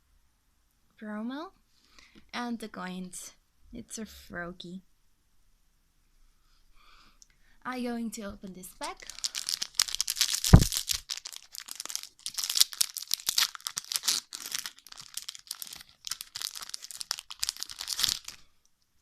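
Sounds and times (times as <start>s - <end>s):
foil wrapper tearing and crinkling: 8.8s - 18.4s.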